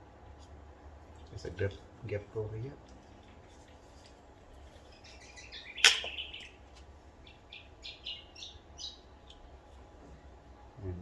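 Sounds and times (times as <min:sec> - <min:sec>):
bird chirping: 0:04.7 - 0:09.5
sharp click: 0:05.8 - 0:06.2.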